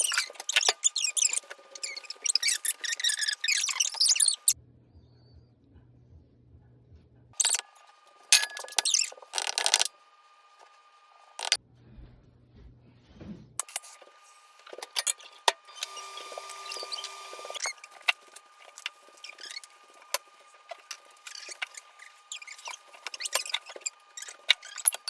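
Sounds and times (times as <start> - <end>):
utensils and dishes clicking: 8.4 - 9.9, 11.4 - 11.6, 14.6 - 25.0.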